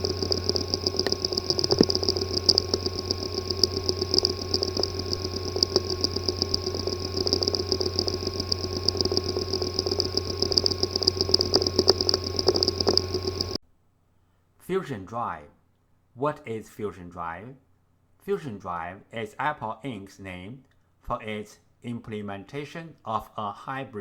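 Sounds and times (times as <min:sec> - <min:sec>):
fluttering high whine: 0:00.0 - 0:13.6
hard drive humming: 0:00.0 - 0:13.6
hard drive ticking: 0:00.0 - 0:13.6.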